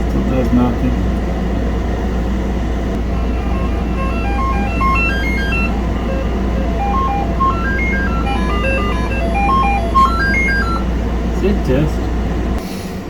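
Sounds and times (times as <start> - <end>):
steady low hum: 0.0 - 12.6
melody of quick single notes: 3.4 - 10.8.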